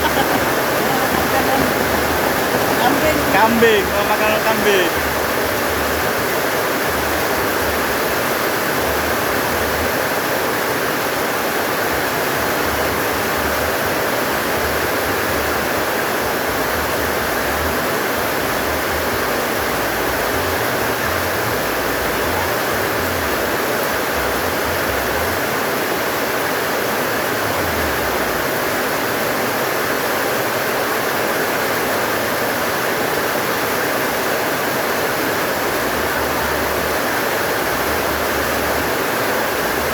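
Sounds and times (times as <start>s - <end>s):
strong wind gusting: 0.0s - 5.7s
heavy rain pouring: 0.0s - 39.9s.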